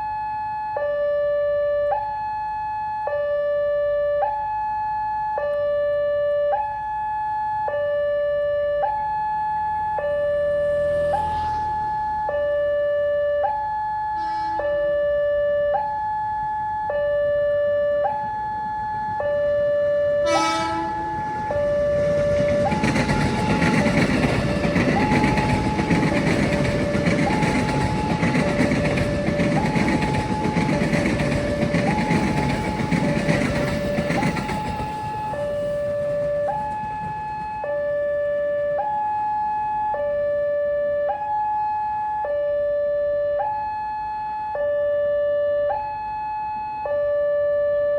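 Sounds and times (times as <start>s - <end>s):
two-tone crossing alarm: 0.0s - 47.9s
train passing rumble: 9.6s - 13.4s, 14.1s - 16.1s, 17.2s - 38.8s
sharp horn blast: 14.1s - 15.2s, 20.2s - 21.8s.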